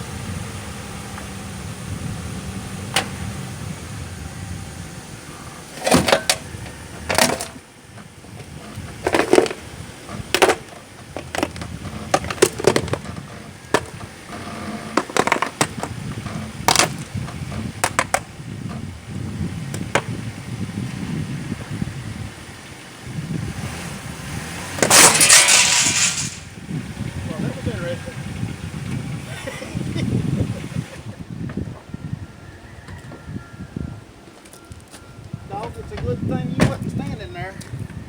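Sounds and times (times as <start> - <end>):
low steady rumble: 0.0 - 32.4
sharp metallic knocks and clanks: 24.8 - 26.6.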